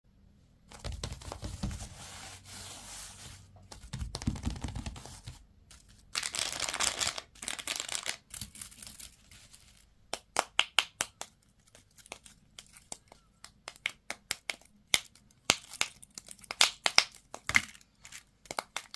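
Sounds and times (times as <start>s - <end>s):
plastic packaging crinkling: 0.8s - 3.5s, 4.6s - 9.9s.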